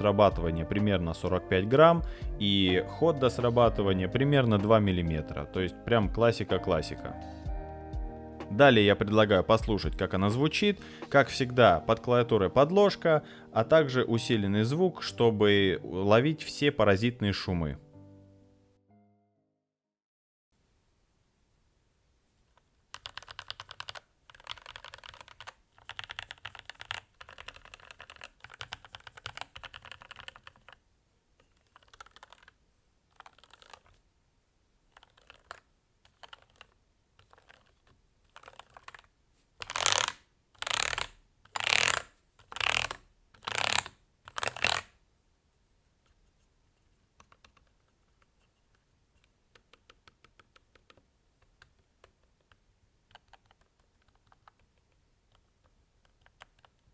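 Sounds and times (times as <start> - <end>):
typing on mechanical keyboard: 22.9 - 30.8, 31.5 - 34.0, 34.9 - 44.9, 47.2 - 48.3, 49.2 - 56.9.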